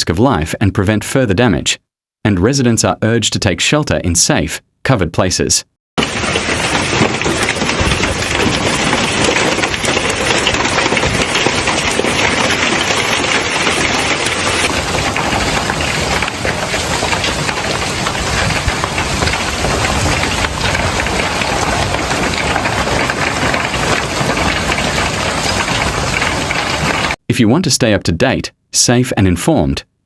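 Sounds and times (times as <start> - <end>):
heavy rain pounding: 6.0 - 27.2.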